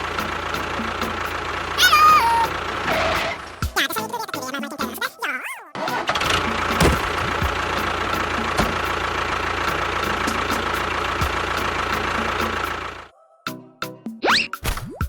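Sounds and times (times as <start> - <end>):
engine idling rumble: 0.0 - 5.2, 5.8 - 13.1
engine knocks: 5.8 - 13.0
engine whine: 6.0 - 13.1.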